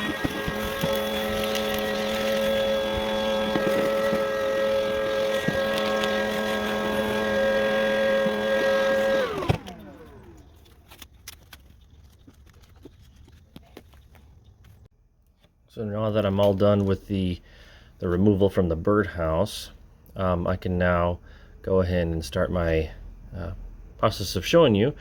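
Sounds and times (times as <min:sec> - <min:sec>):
electric motor whining: 0:00.0 - 0:10.8
faint clicks and handling: 0:08.2 - 0:15.6.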